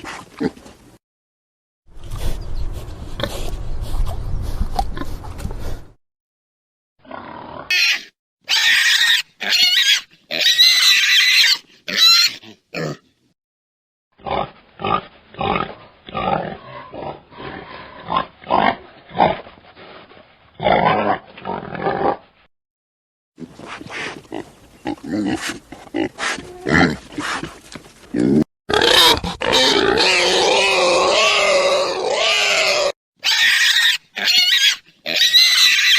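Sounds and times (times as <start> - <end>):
pig grunts and oinks: 7.0 - 13.2, 14.2 - 19.5, 20.6 - 22.3, 23.4 - 35.9
pigs squealing: 7.1 - 13.0, 28.7 - 35.9.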